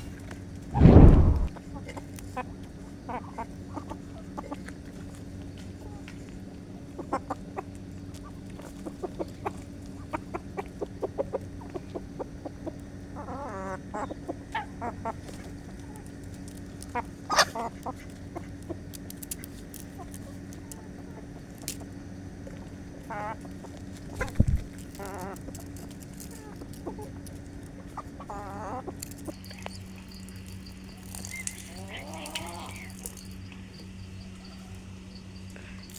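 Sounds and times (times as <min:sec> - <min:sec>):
steady low hum: 0:00.0 - 0:01.6, 0:12.8 - 0:35.9
chickens clucking: 0:06.8 - 0:35.1.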